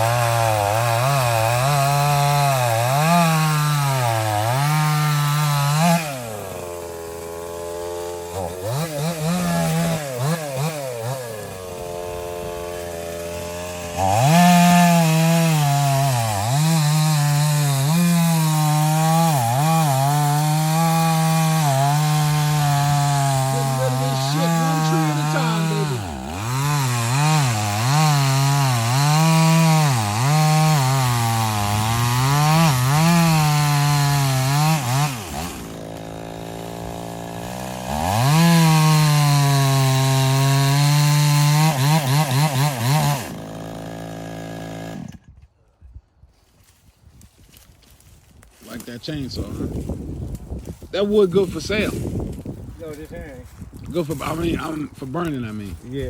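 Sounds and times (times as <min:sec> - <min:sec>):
chainsaw cutting wood: 0:00.0 - 0:45.4, 0:47.2 - 0:56.0.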